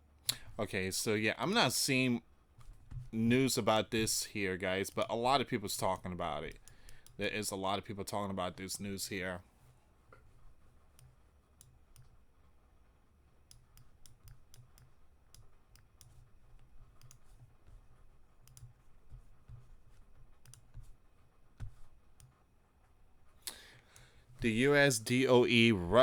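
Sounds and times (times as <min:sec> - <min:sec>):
computer clicking: 0:05.8 - 0:07.4, 0:13.5 - 0:17.4, 0:18.4 - 0:18.8, 0:20.4 - 0:21.0.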